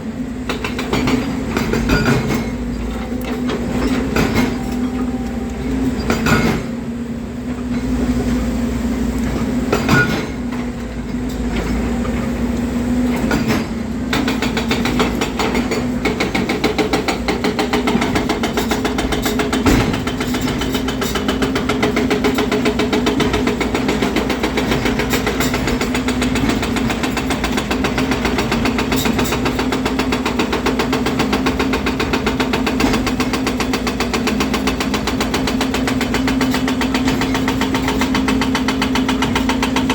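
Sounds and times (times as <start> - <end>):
excavator diesel engine running: 0.0 - 39.9
sharp knocks: 13.3 - 20.3.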